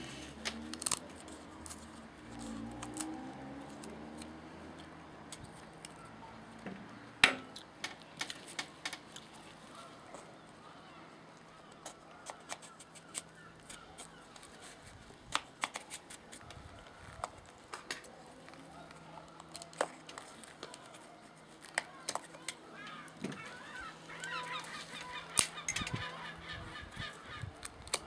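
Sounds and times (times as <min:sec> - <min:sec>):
blade scraping coconut flesh: 0:00.0 - 0:04.4.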